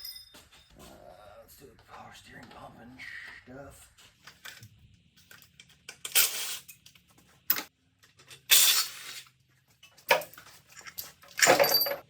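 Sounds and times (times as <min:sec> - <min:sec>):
metal tools clanking: 0:09.8 - 0:12.0.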